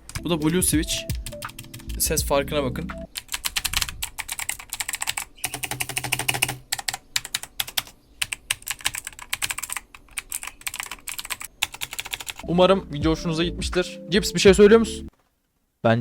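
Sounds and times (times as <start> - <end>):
clicky mechanical keyboard typing: 3.1 - 12.5.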